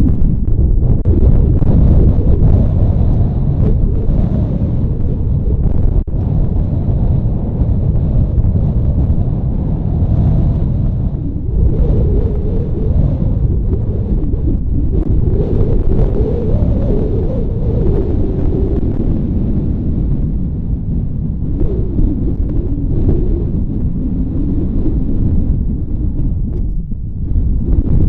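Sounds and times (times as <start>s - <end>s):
wind buffeting microphone: 0.0s - 28.0s.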